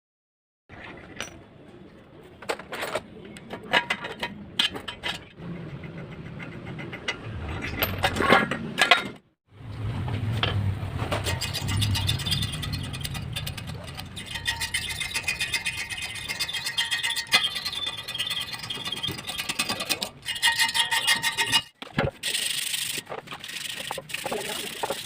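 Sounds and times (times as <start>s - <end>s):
metal tools clinking: 11.1s - 25.0s.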